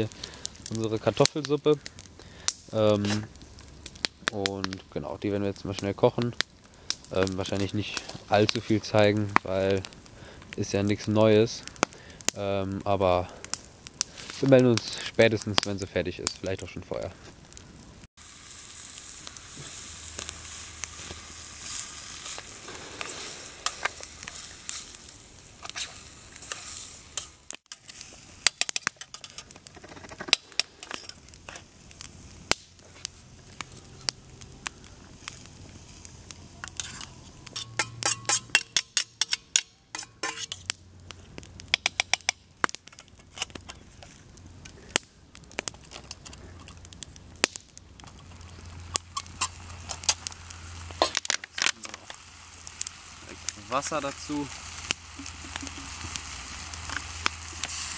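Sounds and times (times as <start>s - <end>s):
food sizzling in a pot: 18.1s - 40.9s, 47.3s - 57.9s
sharp clicks and knocks: 41.7s - 43.7s.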